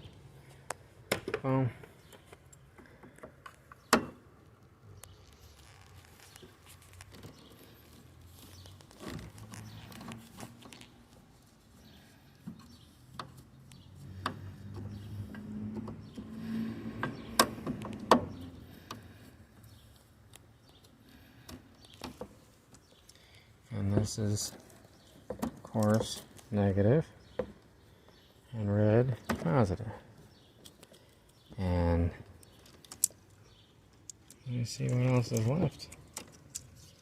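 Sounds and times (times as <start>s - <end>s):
handling knocks and clicks: 23.8s - 26.6s.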